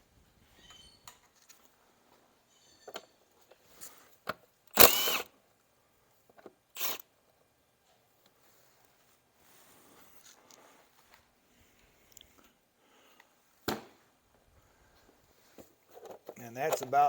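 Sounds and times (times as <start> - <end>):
impact wrench bursts: 4.7 - 5.3, 6.8 - 7.0.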